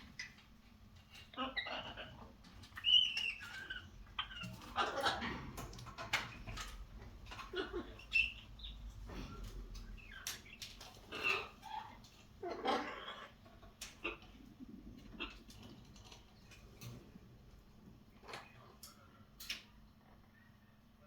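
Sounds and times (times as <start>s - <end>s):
parrot chirps and calls: 1.0s - 14.4s.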